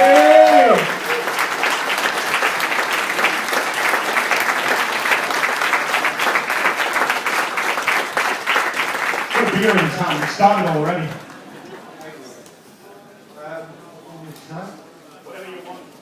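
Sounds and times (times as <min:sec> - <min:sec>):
audience applauding: 0:00.0 - 0:11.8.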